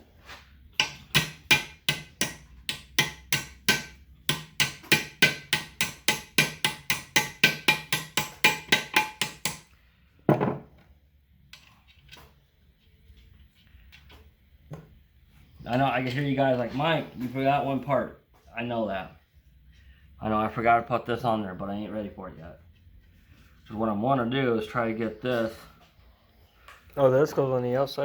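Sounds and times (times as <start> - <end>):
hammer tapping on metal: 0.8 - 9.7.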